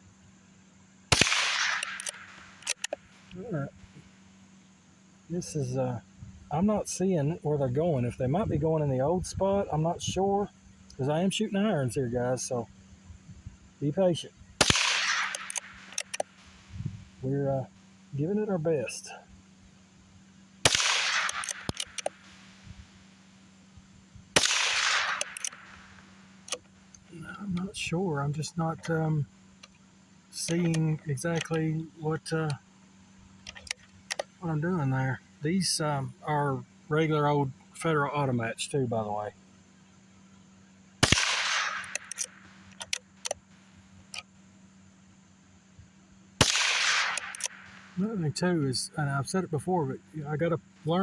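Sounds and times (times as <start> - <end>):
rifle shot with echo: 1.1 - 3.1, 14.6 - 16.7, 20.6 - 22.8, 24.4 - 26.6, 41.0 - 43.0, 46.4 - 48.0.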